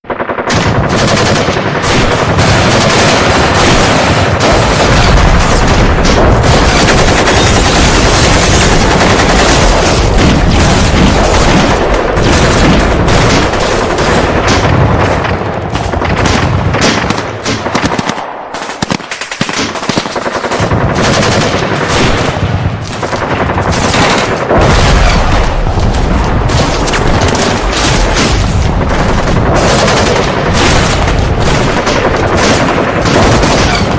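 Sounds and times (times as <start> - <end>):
automatic gunfire: 0.0 - 33.9.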